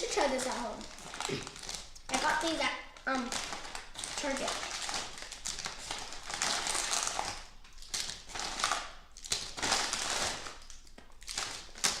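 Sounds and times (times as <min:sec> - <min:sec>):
candy wrappers crinkling: 0:00.0 - 0:12.0.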